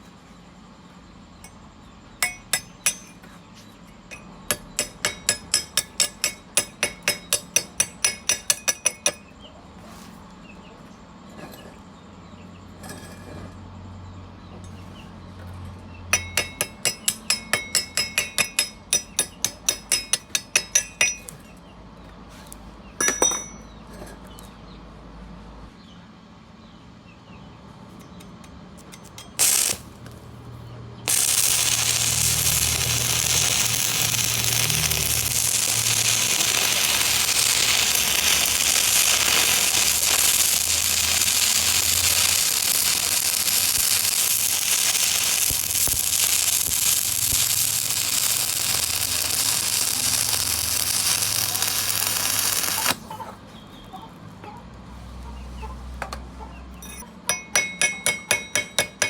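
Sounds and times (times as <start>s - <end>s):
welding arc crackling hiss: 29.4s - 30.1s, 31.1s - 53.0s.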